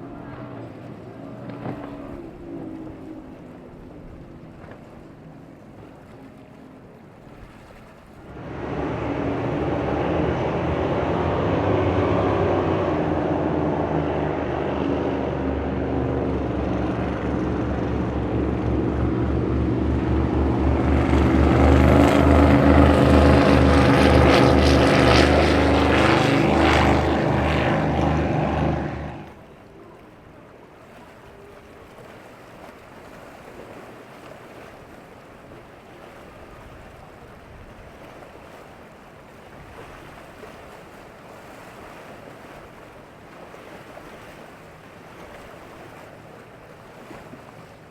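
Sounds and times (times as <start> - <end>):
outboard motor running: 0.0 - 7.0, 7.6 - 32.3
waves washing: 0.0 - 47.9
wind: 0.0 - 47.9.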